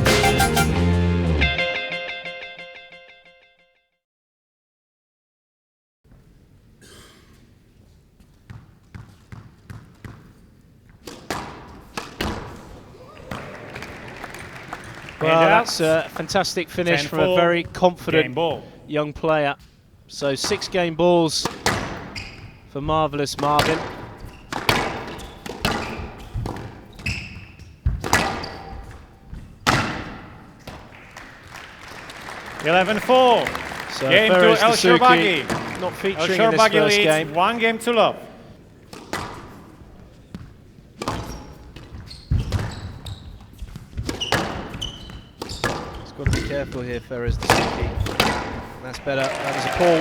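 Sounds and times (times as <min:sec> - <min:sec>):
racket smacking squash ball: 0:11.0 - 0:12.7, 0:23.4 - 0:30.9, 0:44.0 - 0:46.4, 0:47.4 - 0:48.7
ball hitting court walls: 0:11.0 - 0:13.5, 0:21.4 - 0:22.7, 0:23.3 - 0:31.3, 0:38.8 - 0:48.8
shoe squeak: 0:21.8 - 0:22.7, 0:24.1 - 0:29.7, 0:41.2 - 0:46.2.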